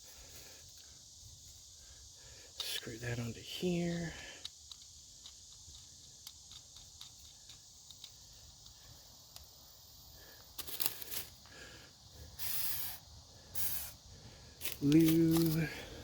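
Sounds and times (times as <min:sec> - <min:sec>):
short hissing bursts: 0:00.0 - 0:16.0.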